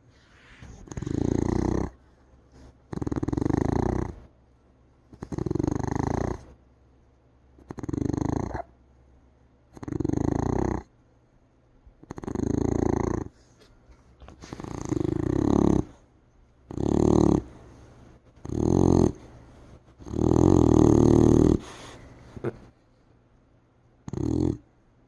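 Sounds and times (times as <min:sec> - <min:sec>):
dog snoring: 0:00.3 - 0:04.3, 0:05.1 - 0:06.6, 0:07.6 - 0:08.7, 0:09.7 - 0:10.9, 0:12.0 - 0:13.4, 0:14.4 - 0:16.0, 0:16.7 - 0:22.7, 0:24.0 - 0:24.7.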